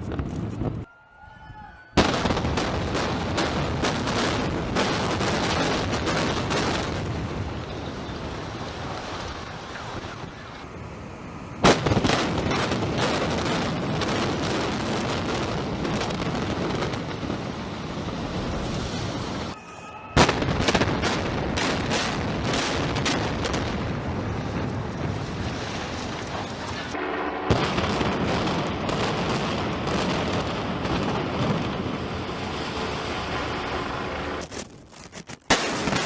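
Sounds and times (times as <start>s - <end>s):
loud blast: 2.0s - 7.2s, 20.1s - 24.1s, 26.9s - 31.6s.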